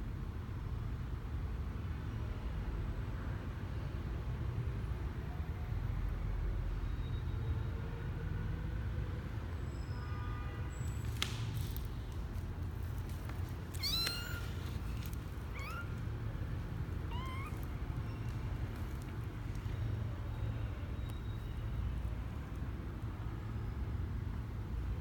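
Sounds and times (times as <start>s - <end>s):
kitten mewing: 13.7s - 19.2s.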